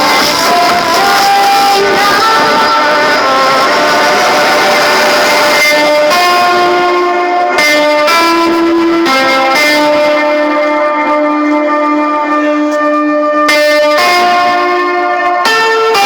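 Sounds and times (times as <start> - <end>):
loud music from car sound system: 0.0 - 16.0.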